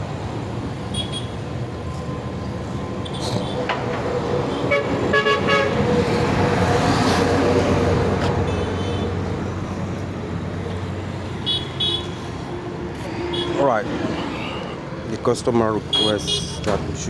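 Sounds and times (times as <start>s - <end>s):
road traffic engine hum: 0.0s - 17.0s
car horn toots: 4.7s - 5.8s, 15.9s - 16.7s.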